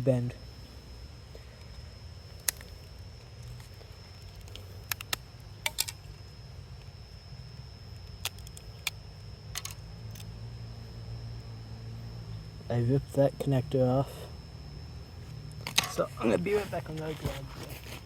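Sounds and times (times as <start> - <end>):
faint high whine: 0.0 - 18.0
low hum: 0.0 - 18.0
phone parts clicking and snapping: 2.3 - 6.2, 8.0 - 10.3, 15.5 - 16.1.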